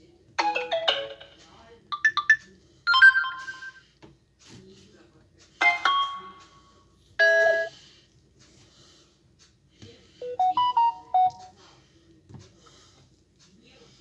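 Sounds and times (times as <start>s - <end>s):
phone alert chime: 0.4s - 1.2s, 2.0s - 3.8s, 5.6s - 6.4s, 7.2s - 7.7s, 10.2s - 11.4s.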